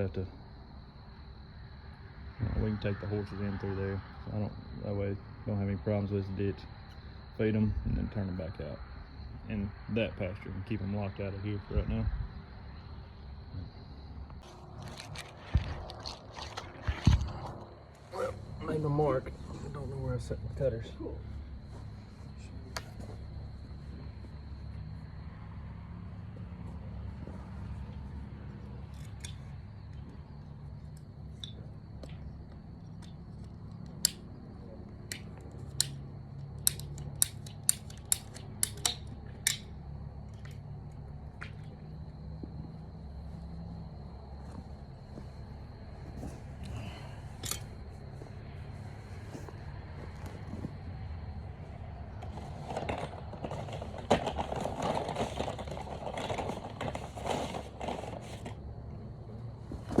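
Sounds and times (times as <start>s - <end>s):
pipe cutters clicking shut: 36.6s - 39.6s
scraping and rustling: 52.2s - 58.7s.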